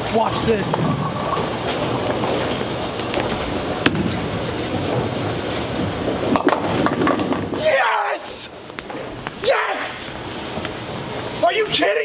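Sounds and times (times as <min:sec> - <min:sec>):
bowling ball rolling on wooden lane: 0:00.3 - 0:07.6
bowling pins clattering: 0:00.3 - 0:07.6.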